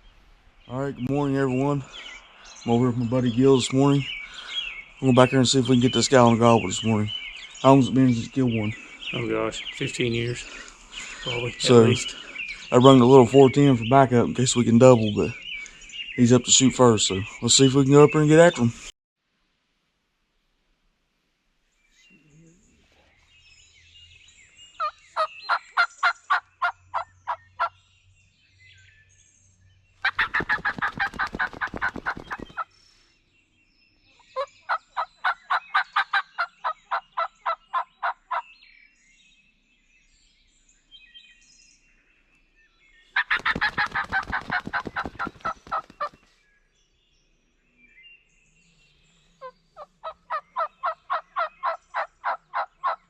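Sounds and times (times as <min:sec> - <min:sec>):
turkey call yelps: 0:24.8 - 0:27.7, 0:30.0 - 0:32.7, 0:34.3 - 0:38.4, 0:43.2 - 0:46.2, 0:49.4 - 0:53.0
turkey call rattling runs: 0:30.0 - 0:32.7, 0:34.4 - 0:38.4, 0:43.2 - 0:46.3, 0:49.8 - 0:53.0.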